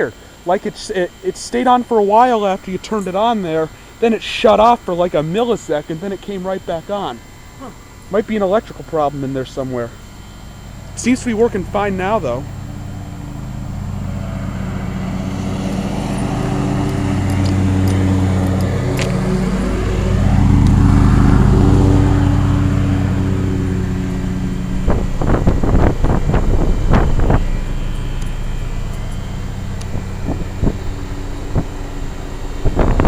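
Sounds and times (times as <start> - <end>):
air conditioner humming: 0.0 - 33.0
car passing: 10.6 - 33.0
rumbling bumps: 21.5 - 33.0.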